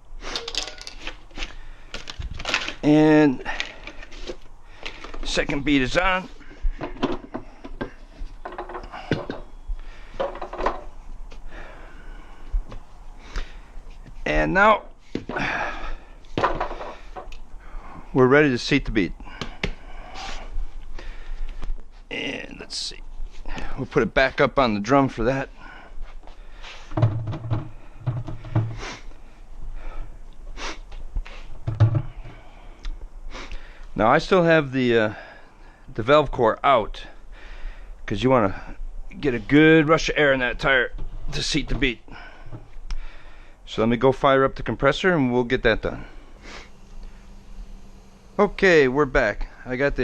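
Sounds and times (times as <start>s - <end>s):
breathy exertion sounds: 1.4s - 5.2s, 6.3s - 14.0s, 14.9s - 18.2s, 19.2s - 22.1s, 25.5s - 34.0s, 35.0s - 35.9s, 37.0s - 38.8s, 42.0s - 43.7s, 45.8s - 48.6s
tools knocking and clicking: 6.8s - 9.5s, 10.2s - 10.9s.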